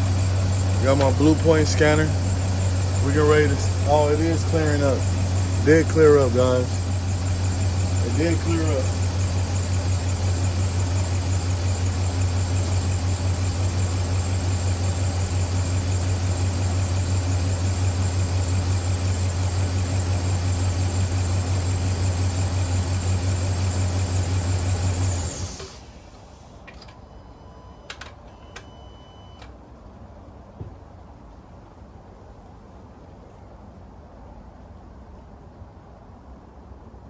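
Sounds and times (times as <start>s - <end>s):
truck engine idling: 0.0s - 26.8s
faint short beeps: 27.0s - 29.5s.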